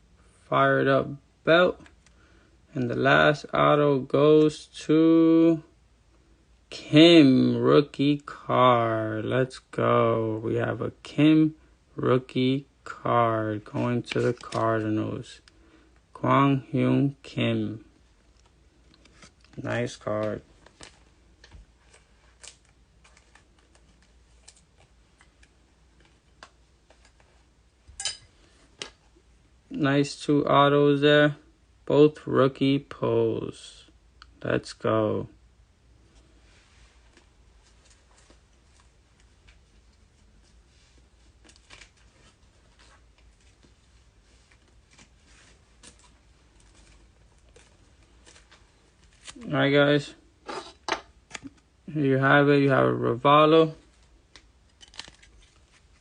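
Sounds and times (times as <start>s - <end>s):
low room hum: 0.0s - 56.0s
trading cards rustling and clicking: 13.6s - 14.8s, 18.4s - 27.4s, 41.2s - 49.5s, 53.9s - 56.0s.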